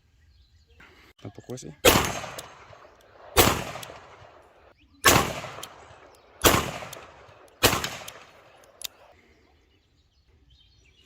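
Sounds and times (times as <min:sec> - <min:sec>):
revolver gunshots: 0:01.8 - 0:09.0.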